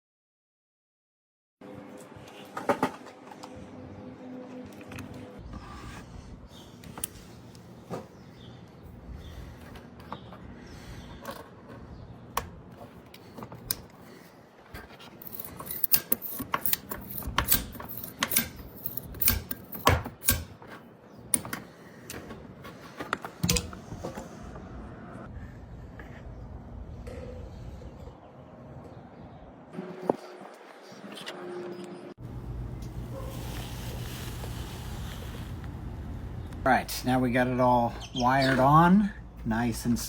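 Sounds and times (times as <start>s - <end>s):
metallic clicks of hand tools: 15.2s - 20.5s.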